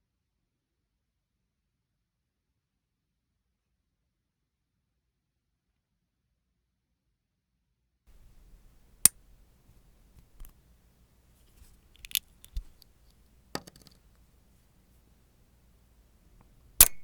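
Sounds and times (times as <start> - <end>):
nail cutter snipping: 8.1 - 14.3, 14.9 - 17.0.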